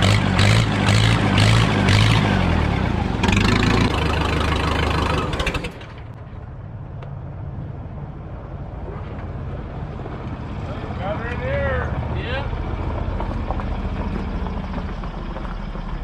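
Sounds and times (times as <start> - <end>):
backhoe engine running: 0.0 - 6.6, 9.6 - 16.0.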